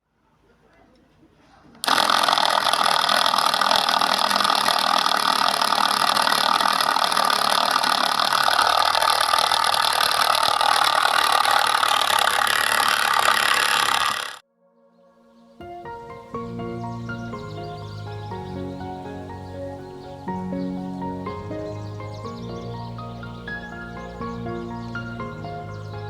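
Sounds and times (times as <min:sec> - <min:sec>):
small electric motor whirring: 0:01.8 - 0:14.4.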